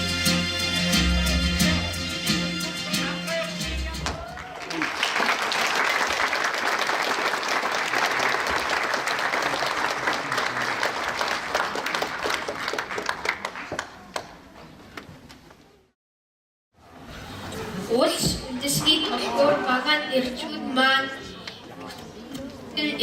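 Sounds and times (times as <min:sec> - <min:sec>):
audience applauding: 0:04.1 - 0:14.3.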